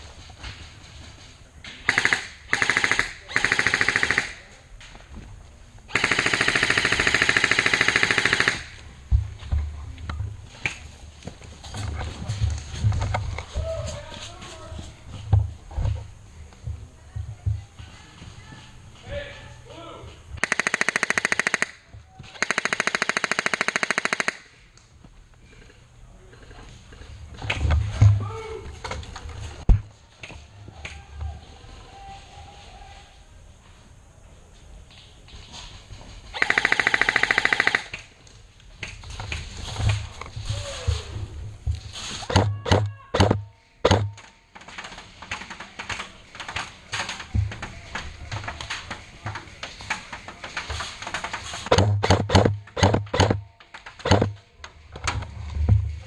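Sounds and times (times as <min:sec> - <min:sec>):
airsoft gun firing full auto: 0:01.9 - 0:04.4, 0:05.9 - 0:08.8, 0:20.4 - 0:21.8, 0:22.4 - 0:24.6, 0:36.4 - 0:38.0.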